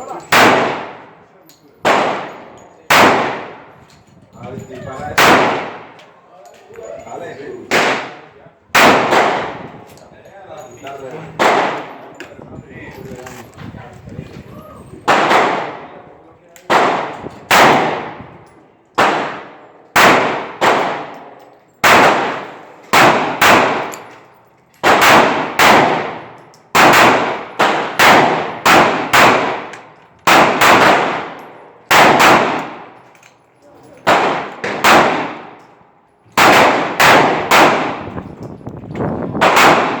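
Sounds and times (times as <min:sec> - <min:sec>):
pistol shots: 0:00.2 - 0:01.2, 0:01.8 - 0:03.7, 0:05.2 - 0:06.0, 0:07.7 - 0:09.7, 0:11.4 - 0:12.0, 0:15.1 - 0:16.0, 0:16.6 - 0:18.2, 0:19.0 - 0:24.2, 0:24.8 - 0:33.0, 0:34.0 - 0:35.6, 0:36.4 - 0:38.2, 0:39.4 - 0:40.0.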